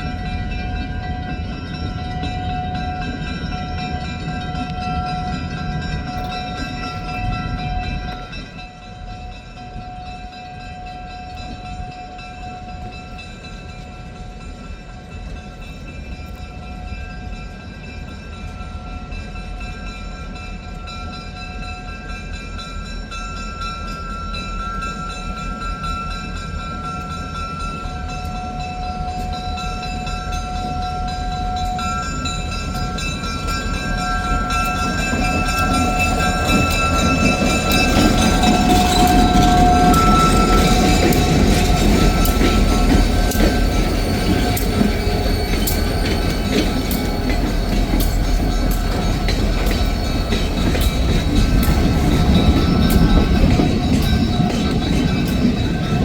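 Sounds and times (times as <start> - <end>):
diesel train engine rumble: 0.0 - 56.0
rail noise: 0.0 - 56.0
steady high tones: 30.1 - 56.0.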